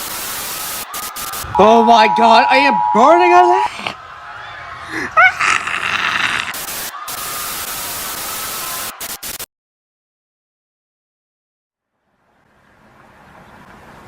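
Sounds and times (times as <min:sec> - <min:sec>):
loud radio static: 0:00.0 - 0:04.0
short rising cry: 0:01.2 - 0:04.0.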